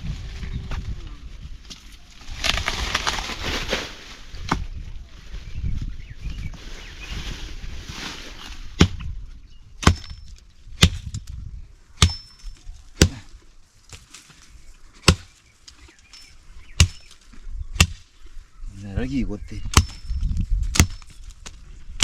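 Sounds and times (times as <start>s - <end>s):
blade chopping wood: 9.8s - 10.2s, 10.8s - 11.2s, 15.0s - 15.3s, 20.7s - 21.6s.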